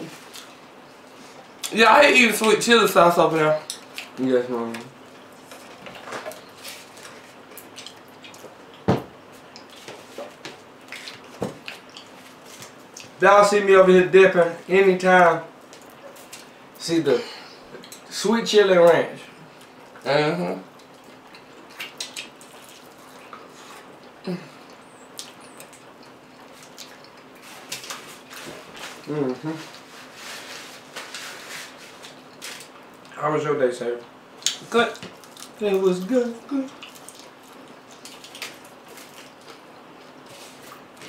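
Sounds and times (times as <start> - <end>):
faint steady hum: 0.0 - 41.0
food crunching: 5.0 - 13.2, 20.7 - 33.1, 34.3 - 41.0
wet chewing and smacking: 5.0 - 13.2, 20.7 - 29.1, 34.4 - 35.6, 36.7 - 41.0
low vocal sound: 29.0 - 29.8.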